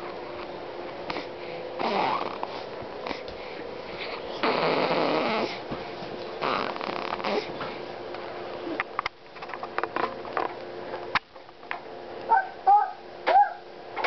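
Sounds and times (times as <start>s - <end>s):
baby snoring: 1.1s - 3.2s, 4.0s - 5.7s, 6.4s - 7.6s.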